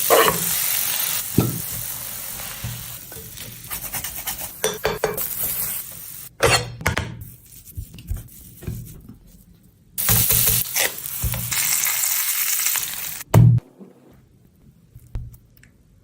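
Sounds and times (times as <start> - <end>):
utensils and dishes clinking: 0.0 - 0.6, 3.1 - 5.7.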